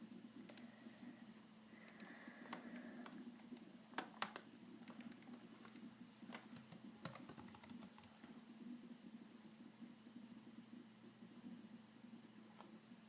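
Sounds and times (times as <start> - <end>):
steady low hum: 0.0 - 13.0
keyboard keys tapping: 1.8 - 9.2.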